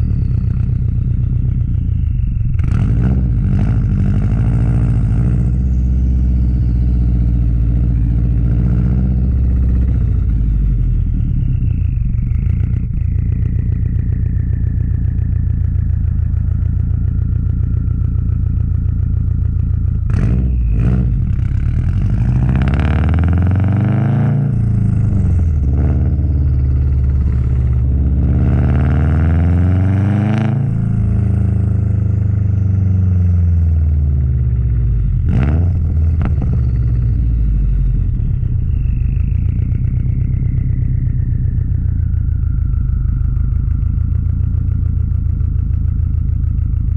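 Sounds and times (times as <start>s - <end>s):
car engine and exhaust: 0.0s - 46.9s
faint falling whistle: 37.5s - 44.8s.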